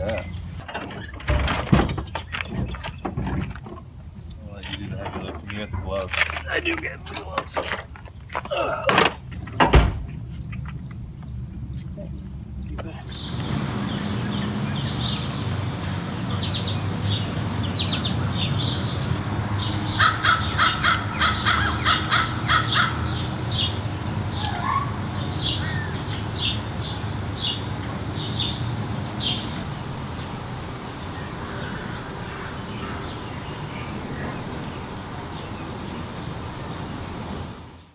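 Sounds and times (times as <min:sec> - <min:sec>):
bird calls: 0:00.0 - 0:08.4, 0:10.3 - 0:37.9
steady low hum: 0:11.0 - 0:37.9.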